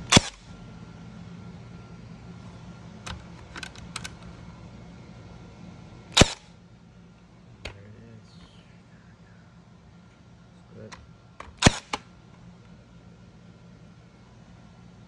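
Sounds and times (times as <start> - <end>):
stapler firing loud crack: 0.0 - 0.5, 6.2 - 6.5, 11.4 - 12.1.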